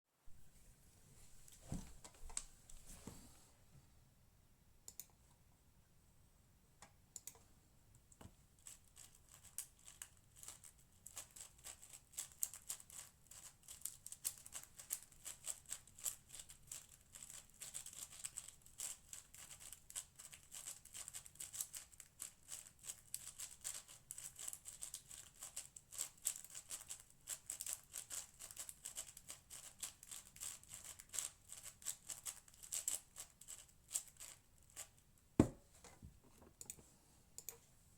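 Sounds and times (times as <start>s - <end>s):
speedcube turning clatter: 8.6s - 34.9s.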